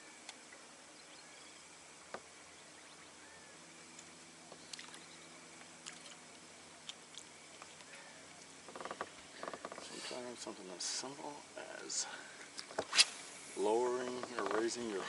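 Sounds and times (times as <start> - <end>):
soft chirps: 0.0 - 10.3
faint low hum: 0.0 - 15.0.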